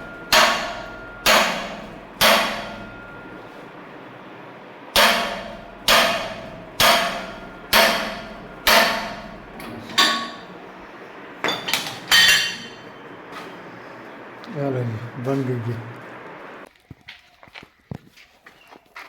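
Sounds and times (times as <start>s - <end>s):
hammer striking metal: 0.0s - 3.7s, 4.9s - 13.5s.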